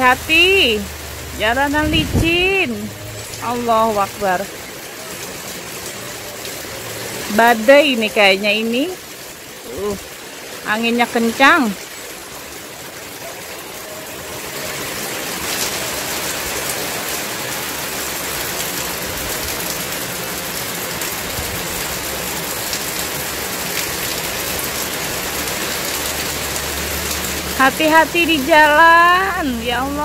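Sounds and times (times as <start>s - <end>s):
heavy rain pouring: 0.0s - 30.0s
strong wind: 1.4s - 2.8s.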